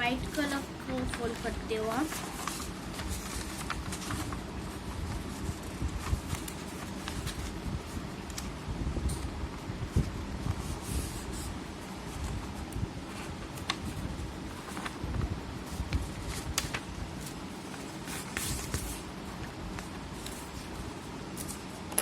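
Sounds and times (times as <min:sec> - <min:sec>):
paper rustling while folded: 0:00.0 - 0:08.6, 0:09.2 - 0:21.9.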